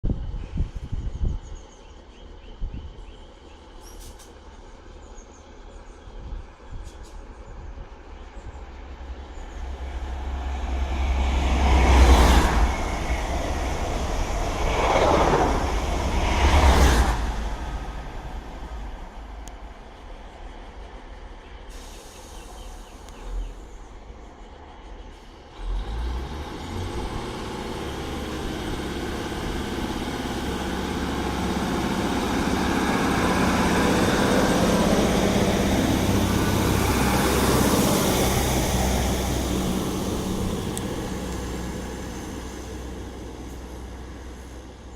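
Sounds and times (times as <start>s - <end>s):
train rolling on rails: 1.4s - 44.9s
diesel engines revving: 7.8s - 44.9s
train brakes: 21.6s - 23.7s.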